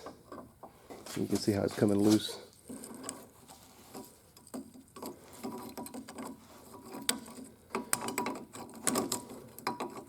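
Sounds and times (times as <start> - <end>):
wrench clicking and scraping on nut: 3.9 - 10.0.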